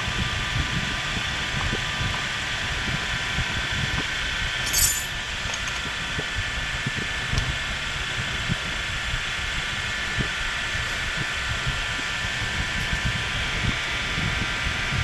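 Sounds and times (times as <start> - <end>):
steady background hum: 4.4 - 8.1
bright metallic clink: 4.6 - 5.2.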